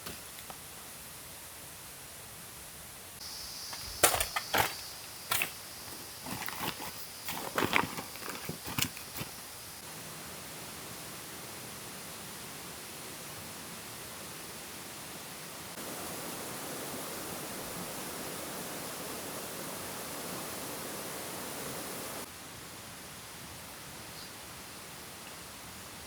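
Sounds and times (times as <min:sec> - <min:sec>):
rushing water: 0:11.1 - 0:22.3.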